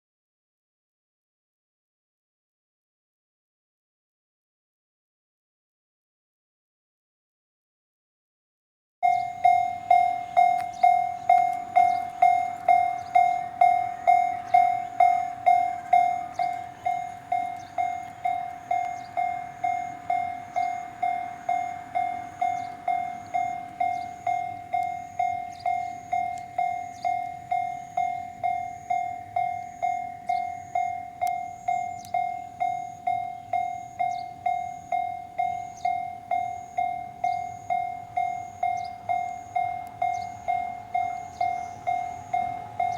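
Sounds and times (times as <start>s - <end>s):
level crossing alarm bell: 9.0s - 42.9s.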